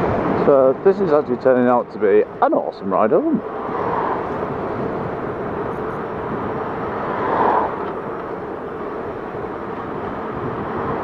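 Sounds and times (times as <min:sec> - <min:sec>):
wind rush on microphone: 0:00.0 - 0:00.9, 0:03.2 - 0:11.0.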